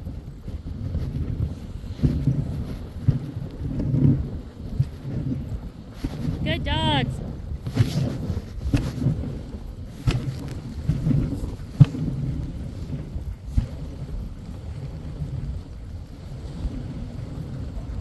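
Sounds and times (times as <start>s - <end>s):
sled runners rumbling on snow: 0.0s - 18.0s
sled jolting knocks: 10.0s - 12.8s.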